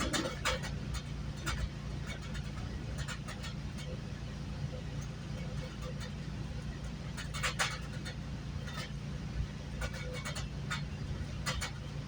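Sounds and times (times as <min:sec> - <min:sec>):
sharp clicks and rattles: 0:00.0 - 0:12.0
train rumble inside coach: 0:00.0 - 0:12.0.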